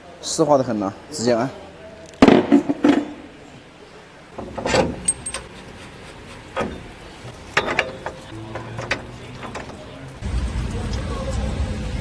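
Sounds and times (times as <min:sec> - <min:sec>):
metal clanks and knocks: 0:04.4 - 0:10.1.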